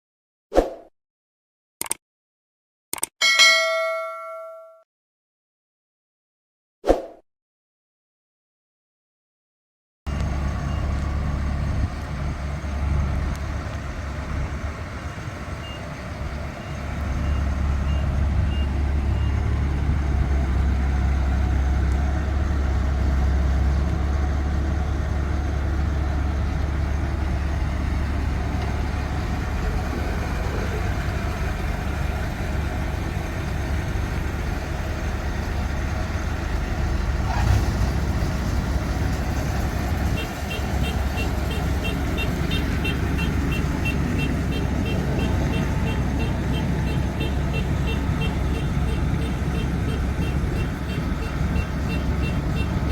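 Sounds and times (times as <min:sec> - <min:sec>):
diesel engine rumbling: 0:10.1 - 0:52.9.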